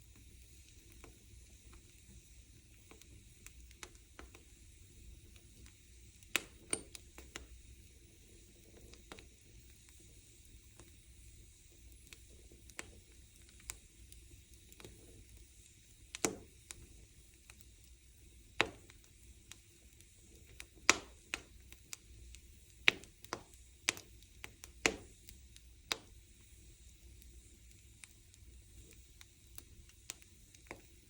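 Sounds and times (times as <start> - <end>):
faint steady hiss: 0.0 - 31.0
wood fire crackling: 0.0 - 31.0.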